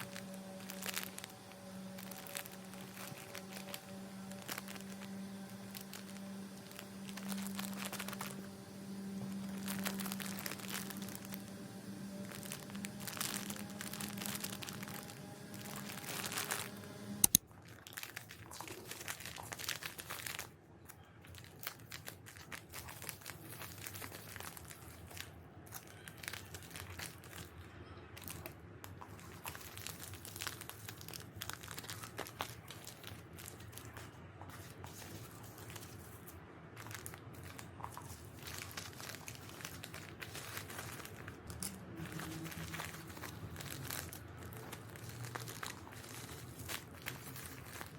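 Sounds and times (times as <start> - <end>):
packaging crinkling and rustling: 0.0 - 47.9
small clicks: 15.7 - 17.4.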